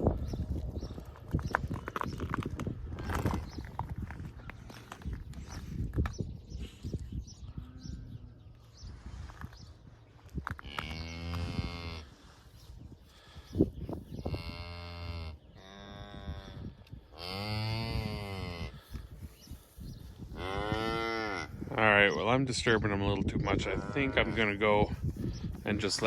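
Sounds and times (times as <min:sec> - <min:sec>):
cow mooing: 0:20.4 - 0:21.6, 0:23.6 - 0:24.6.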